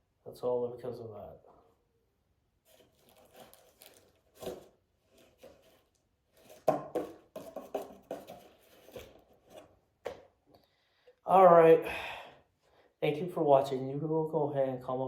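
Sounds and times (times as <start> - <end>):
plastic cup and cardboard clattering: 2.7 - 10.4.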